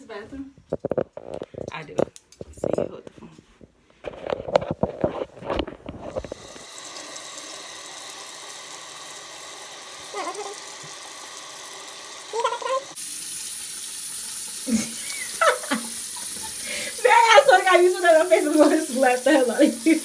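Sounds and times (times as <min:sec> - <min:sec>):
water running: 0:06.0 - 0:20.0.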